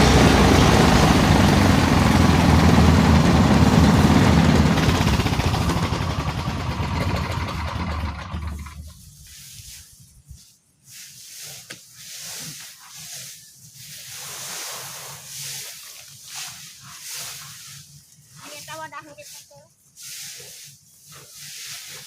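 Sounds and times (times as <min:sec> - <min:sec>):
rice thresher engine running: 0:00.0 - 0:09.8.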